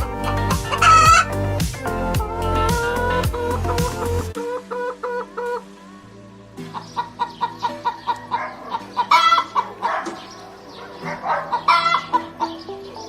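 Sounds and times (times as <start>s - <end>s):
background music: 0.0s - 13.0s.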